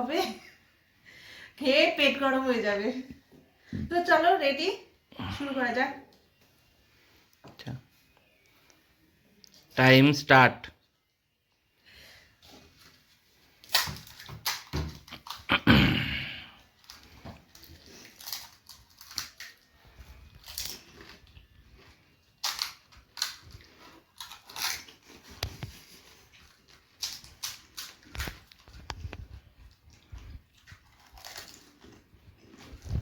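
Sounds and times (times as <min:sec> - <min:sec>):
crisp shells crunching: 0:16.7 - 0:25.4, 0:26.3 - 0:29.0, 0:30.6 - 0:33.0.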